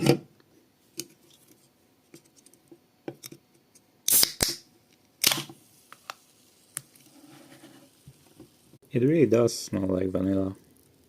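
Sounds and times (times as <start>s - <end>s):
can opening hiss: 4.0s - 8.8s.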